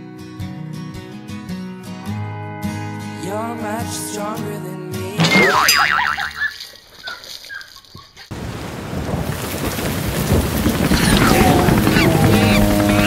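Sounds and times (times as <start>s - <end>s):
rain: 6.5s - 13.0s
birds chirping: 10.9s - 13.0s.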